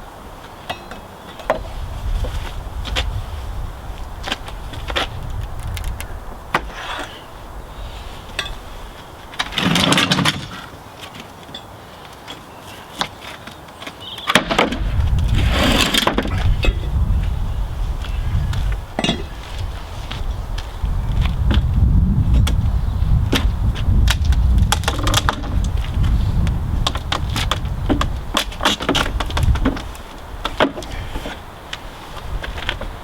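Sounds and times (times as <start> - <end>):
wind rumble on microphone: 1.4 - 10.6, 14.4 - 33.0
wood cracking and creaking: 4.2 - 6.8, 9.3 - 11.2, 13.0 - 17.4, 23.3 - 33.0.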